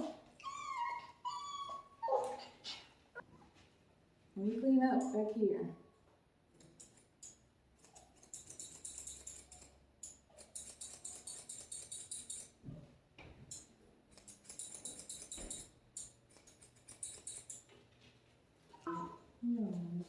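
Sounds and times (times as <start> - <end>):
grooming shears snipping: 6.6 - 9.7, 16.0 - 17.7.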